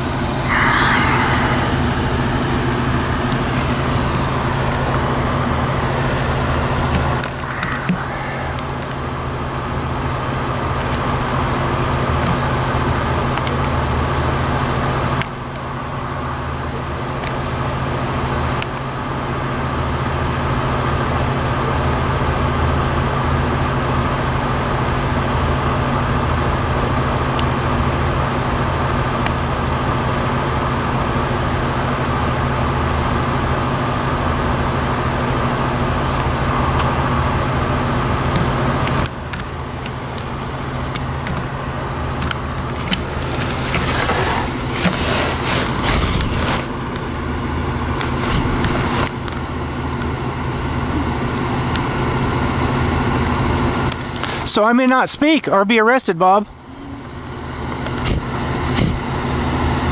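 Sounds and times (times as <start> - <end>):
street noise: 0.0 - 10.6
brief loud rush: 0.4 - 2.9, 6.2 - 10.2.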